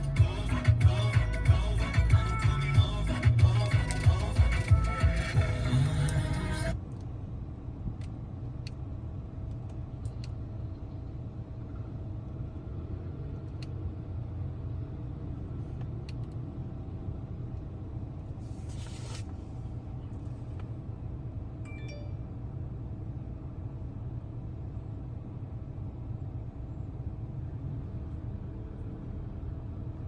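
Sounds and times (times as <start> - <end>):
steady low rumble: 0.0 - 30.0
brief hiss: 18.4 - 19.6.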